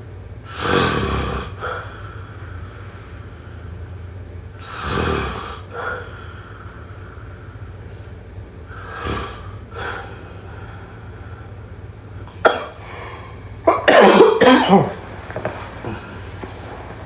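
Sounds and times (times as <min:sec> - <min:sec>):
person snoring: 0:04.6 - 0:07.7, 0:08.7 - 0:11.5
loud rough cough: 0:12.3 - 0:16.7.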